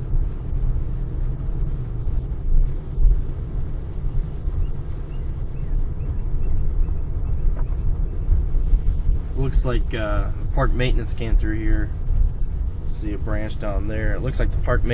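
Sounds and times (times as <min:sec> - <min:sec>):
car interior road and engine rumble: 0:00.0 - 0:14.9.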